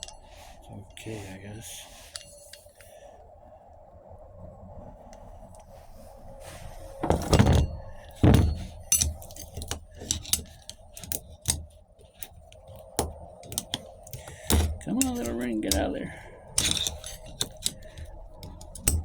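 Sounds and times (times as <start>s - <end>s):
metal parts clattering: 2.1s - 2.7s, 7.0s - 19.0s
sharp metallic clicks and taps: 8.9s - 16.0s.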